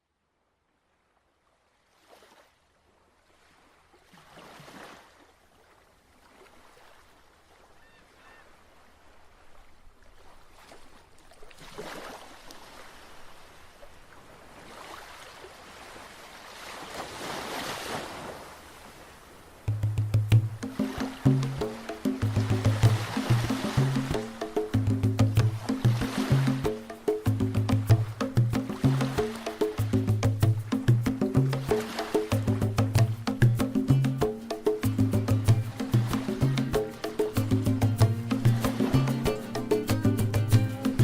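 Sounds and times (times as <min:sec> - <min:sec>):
sea waves washing in: 0:08.6 - 0:41.0.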